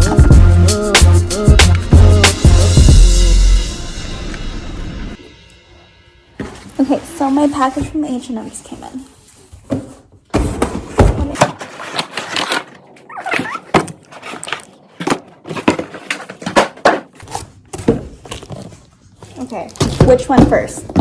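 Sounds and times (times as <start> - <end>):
packaging rustling: 11.4 - 20.3.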